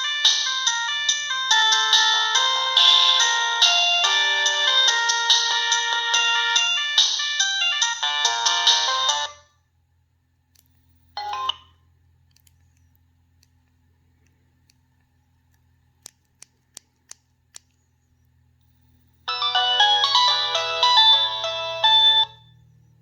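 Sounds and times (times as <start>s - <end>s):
polyphonic phone ringtone: 0.0s - 9.5s, 11.2s - 11.7s, 19.3s - 22.4s.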